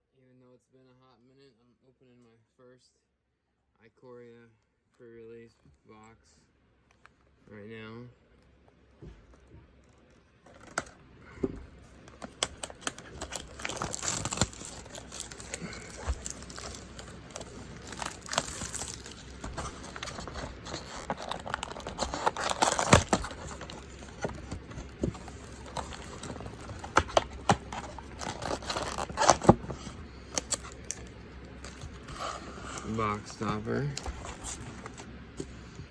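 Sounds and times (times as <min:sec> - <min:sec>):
plastic wrapping crinkling and tearing: 0:12.0 - 0:35.1.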